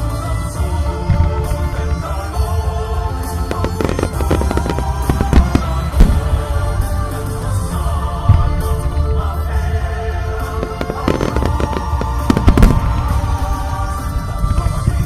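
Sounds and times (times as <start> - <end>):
music: 0.0 - 15.0
fireworks booms and bangs: 3.2 - 7.6, 10.3 - 15.0.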